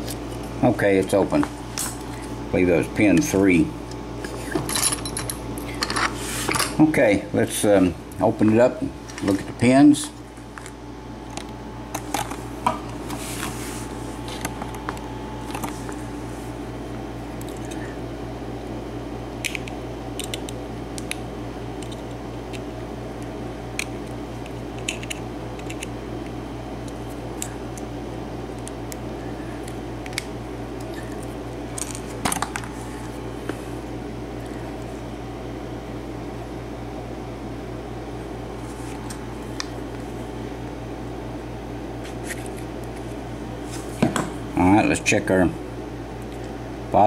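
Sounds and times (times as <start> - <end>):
air conditioner humming: 0.0 - 47.0.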